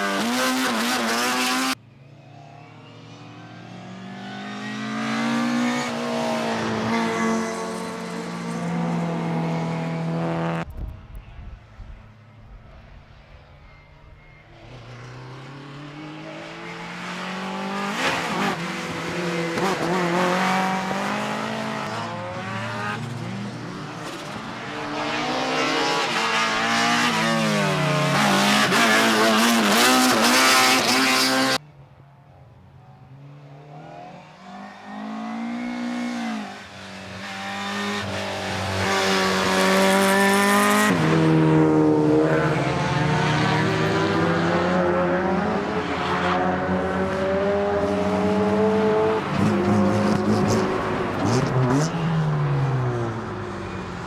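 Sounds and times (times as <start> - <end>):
car engine revving: 14.8 - 31.6, 35.0 - 53.9.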